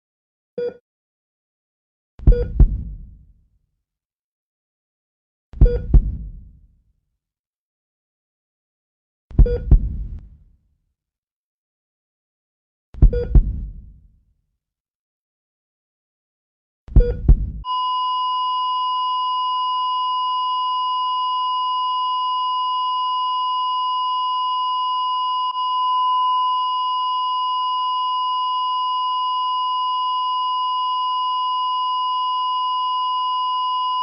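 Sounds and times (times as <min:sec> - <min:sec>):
low thumping: 0:02.3 - 0:03.2, 0:05.6 - 0:06.6, 0:09.4 - 0:10.3, 0:13.0 - 0:13.9, 0:17.0 - 0:17.6
continuous monitor beep tone: 0:17.0 - 0:34.0.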